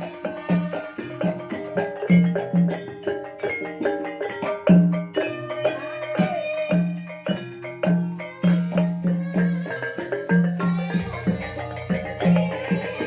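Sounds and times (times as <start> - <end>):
gamelan music: 0.0 - 13.0.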